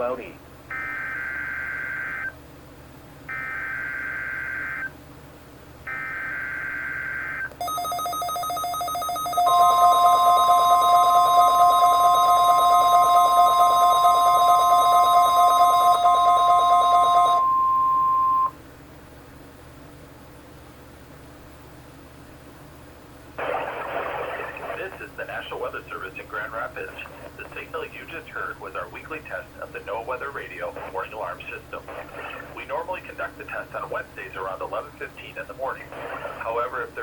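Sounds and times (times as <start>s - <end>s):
steady warning alarm tone: 0.7s - 2.3s, 3.3s - 4.9s, 5.9s - 18.6s
pulsing buzzy electronic alarm: 0.7s - 2.4s, 3.3s - 4.9s, 5.9s - 18.5s
warbling data bursts: 5.9s - 17.5s
radio hiss: 23.4s - 37.0s.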